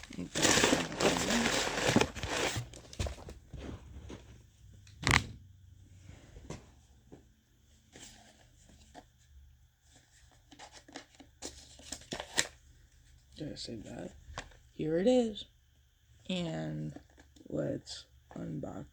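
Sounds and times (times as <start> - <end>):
cardboard packaging rustling: 0.0 - 5.4, 10.0 - 12.6
sharp cardboard crack: 5.0 - 5.4.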